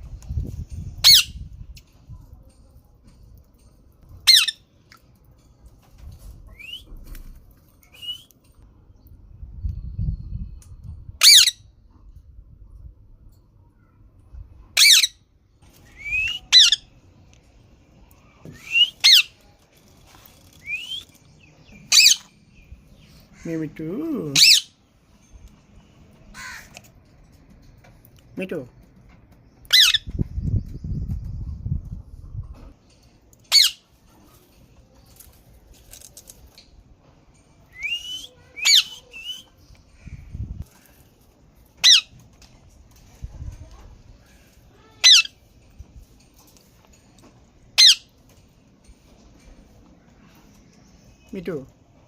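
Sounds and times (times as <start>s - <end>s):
parrot squawking: 1.0s - 1.4s, 4.3s - 4.6s, 11.2s - 11.6s, 14.8s - 15.2s, 16.0s - 16.9s, 18.6s - 19.4s, 21.9s - 22.2s, 24.3s - 24.8s, 29.7s - 30.1s, 33.5s - 33.8s, 37.8s - 39.4s, 41.8s - 42.2s, 45.0s - 45.4s, 47.8s - 48.1s
parrot rising whistle: 15.9s - 16.7s, 18.6s - 19.2s, 20.6s - 21.0s
low rumble: 30.0s - 32.8s.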